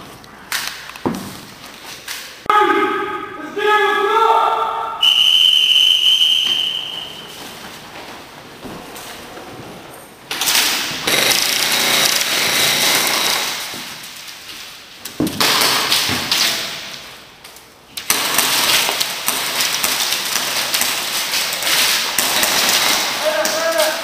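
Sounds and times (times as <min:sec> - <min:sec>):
airsoft guns firing full-auto bursts: 0:11.1 - 0:13.6.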